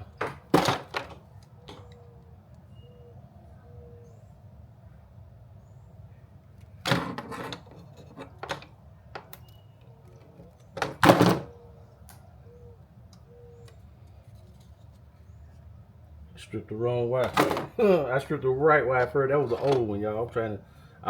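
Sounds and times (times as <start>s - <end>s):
handling clunks and knocks: 0.0s - 2.0s, 6.8s - 9.3s, 17.2s - 17.8s, 19.0s - 20.2s.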